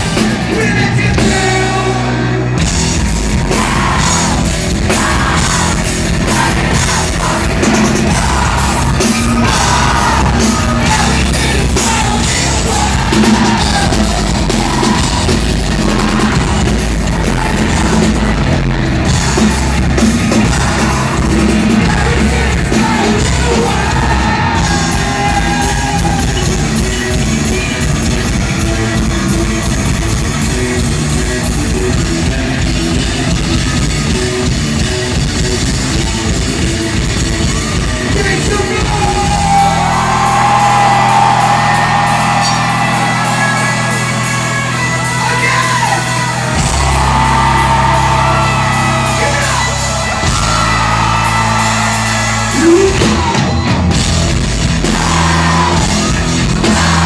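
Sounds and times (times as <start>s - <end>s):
drums: 0.0s - 57.0s
live rock band playing: 0.0s - 57.0s
person singing and shouting: 0.3s - 2.4s, 3.4s - 26.2s, 38.1s - 40.4s, 52.4s - 53.6s.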